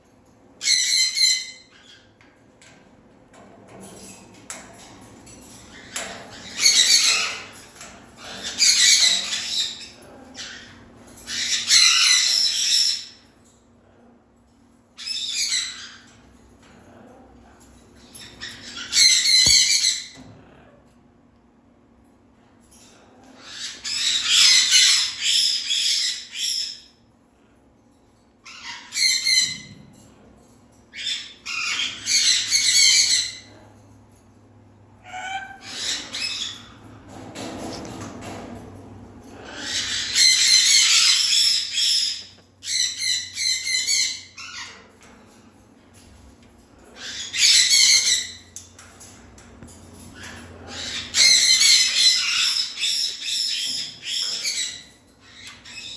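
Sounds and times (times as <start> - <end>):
parrot squawking: 8.2 - 13.2, 18.2 - 20.2, 23.4 - 26.8, 35.0 - 36.8, 39.4 - 44.8, 47.0 - 48.4, 50.2 - 55.9.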